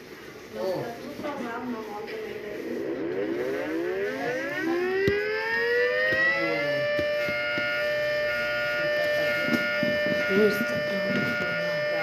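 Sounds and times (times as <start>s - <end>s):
warning siren winding up: 2.8s - 12.0s.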